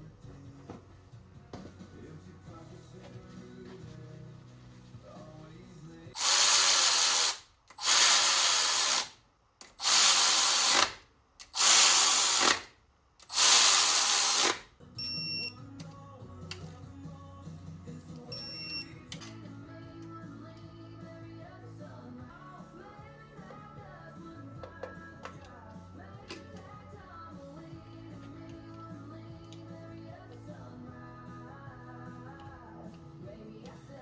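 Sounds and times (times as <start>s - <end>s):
faint background music: 0.0s - 9.0s, 14.0s - 34.0s
power tool running in bursts: 6.2s - 9.1s, 9.8s - 14.6s.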